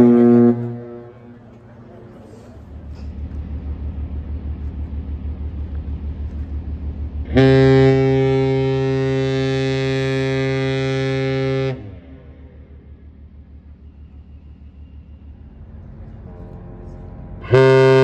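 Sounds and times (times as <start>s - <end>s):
ship horn blast: 0.0s - 2.4s, 7.2s - 13.0s, 15.3s - 18.0s
ship engine throb: 0.0s - 18.0s.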